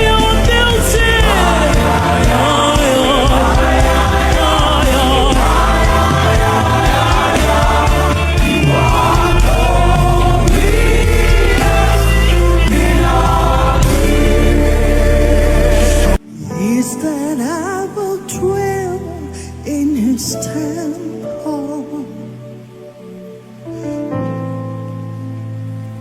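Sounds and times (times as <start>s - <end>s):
instrumental backing: 0.0s - 18.1s
choir singing gospel music: 0.0s - 23.6s.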